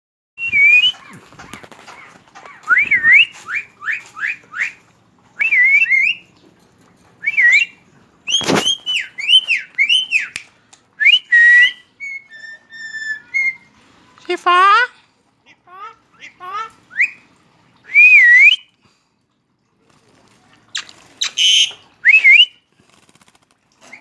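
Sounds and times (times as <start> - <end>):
myna whistling: 0.4 - 1.2, 2.6 - 4.8, 5.4 - 6.2, 7.2 - 10.4, 11.0 - 13.7, 16.9 - 17.2, 17.9 - 18.7, 20.8 - 22.5
bird harsh call: 20.8 - 22.3.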